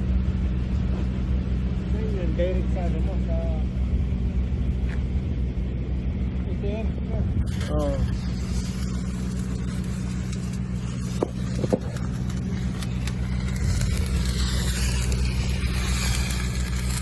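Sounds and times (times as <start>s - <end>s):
engine low drone: 0.0s - 17.0s
arc welding crackling hiss: 7.4s - 17.0s.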